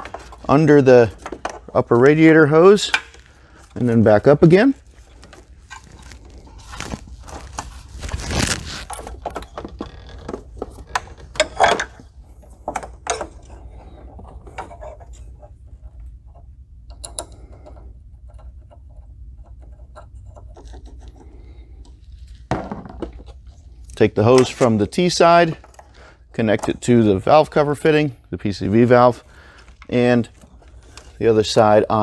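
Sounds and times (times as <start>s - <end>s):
hose scraping and rubbing: 4.8s - 10.6s.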